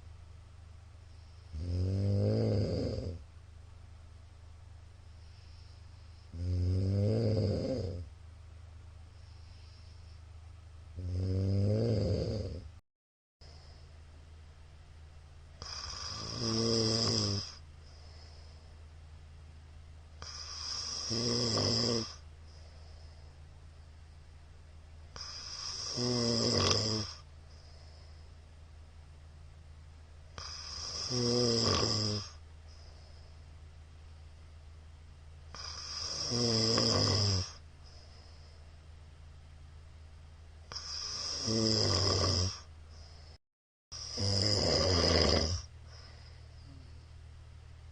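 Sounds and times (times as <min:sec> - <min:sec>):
man snoring loudly: 0:01.5 - 0:03.2, 0:06.3 - 0:08.1, 0:11.0 - 0:12.7, 0:15.6 - 0:17.6, 0:20.2 - 0:22.2, 0:25.2 - 0:27.2, 0:30.4 - 0:32.4, 0:35.5 - 0:37.6, 0:40.7 - 0:42.7, 0:44.0 - 0:45.7.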